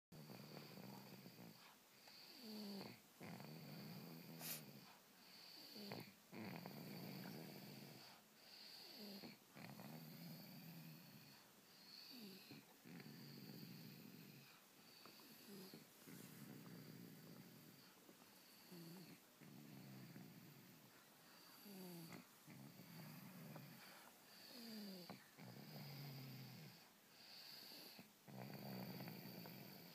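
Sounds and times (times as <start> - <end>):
snoring: 0.2 - 29.9.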